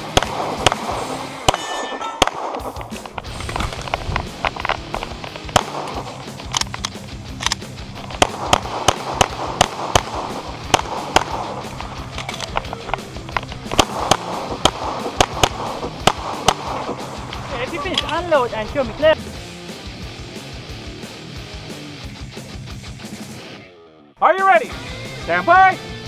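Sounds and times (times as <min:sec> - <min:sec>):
pistol shots: 0:00.0 - 0:18.2.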